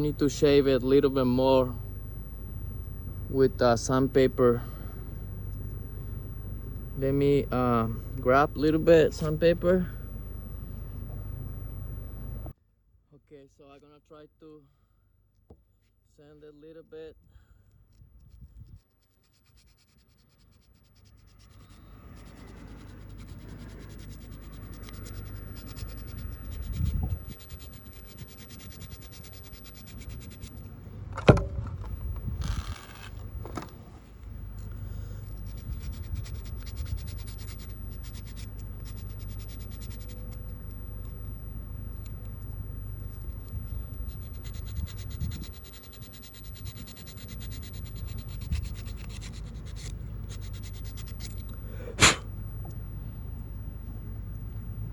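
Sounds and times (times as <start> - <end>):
sandpaper rubbing: 18.3 - 30.7, 35.2 - 40.8, 43.1 - 52.2.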